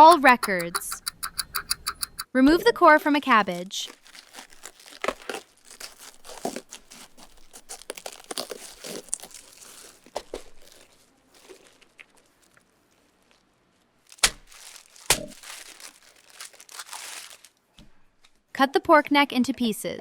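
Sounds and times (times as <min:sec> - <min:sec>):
knife cutting cabbage: 0:00.0 - 0:02.2, 0:03.5 - 0:12.2, 0:14.1 - 0:16.0
cabbage leaves crunching: 0:03.2 - 0:17.6.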